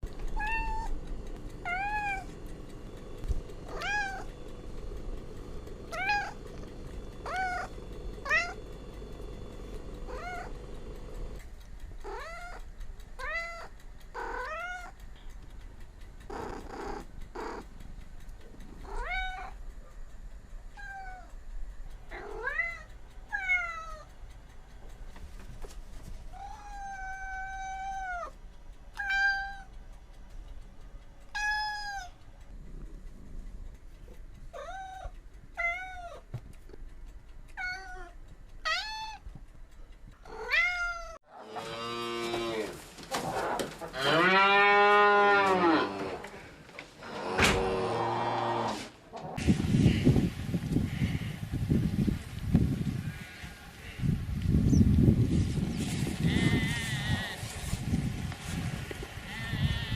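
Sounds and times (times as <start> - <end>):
cats meowing: 0.2 - 1.0, 1.6 - 2.4, 3.6 - 4.3, 5.8 - 8.6, 10.0 - 10.7, 12.0 - 15.0, 18.8 - 19.6, 20.8 - 21.4, 22.1 - 24.1, 26.3 - 28.4, 29.0 - 29.7, 31.3 - 32.2, 34.5 - 36.3, 37.5 - 39.3, 40.2 - 41.2.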